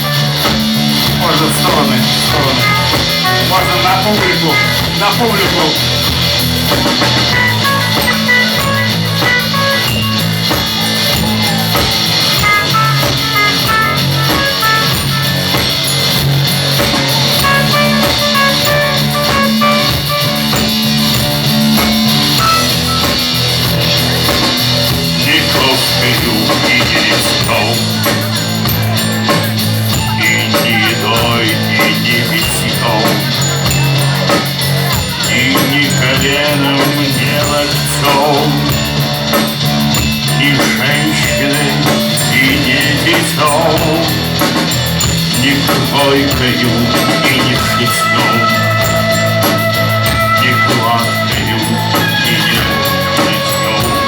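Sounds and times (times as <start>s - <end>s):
rock band playing: 0.0s - 54.0s.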